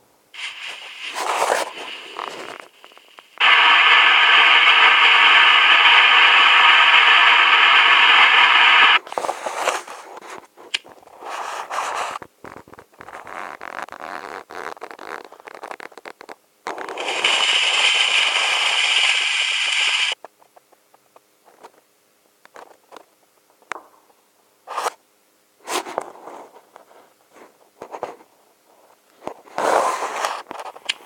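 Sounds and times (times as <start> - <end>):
firework spraying sparks hissing: 0.4 - 9.3, 16.7 - 20.2
small crackles and pops: 0.4 - 9.3, 10.2 - 24.2, 30.1 - 31.0.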